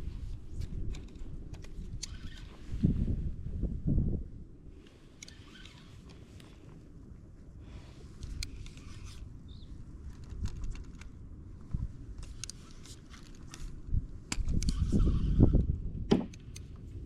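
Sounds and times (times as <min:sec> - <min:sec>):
wind buffeting microphone: 0:00.0 - 0:04.6, 0:08.2 - 0:17.0.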